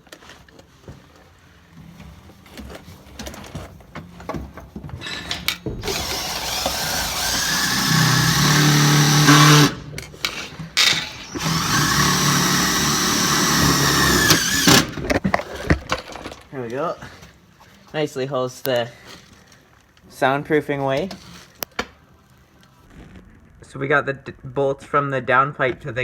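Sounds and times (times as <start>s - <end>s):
power drill driving screw: 5.0s - 15.2s.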